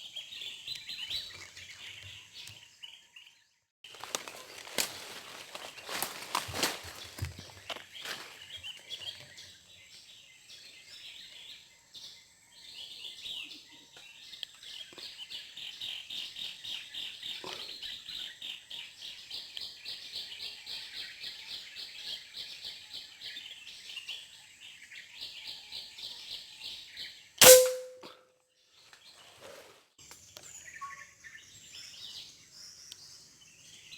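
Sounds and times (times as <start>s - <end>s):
small birds chirping: 0.0s - 27.4s, 28.6s - 33.9s
loud sharp crack: 27.4s - 28.0s.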